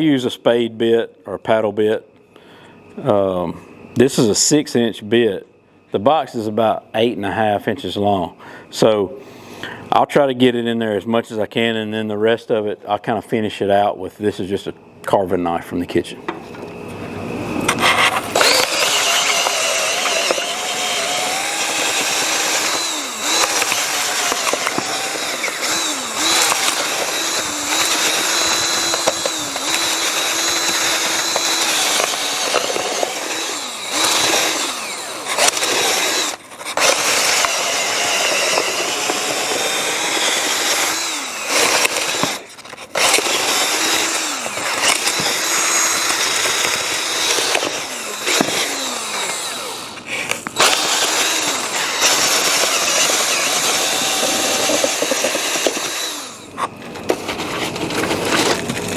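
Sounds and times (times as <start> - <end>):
power drill boring into foam: 17.7 - 56.7.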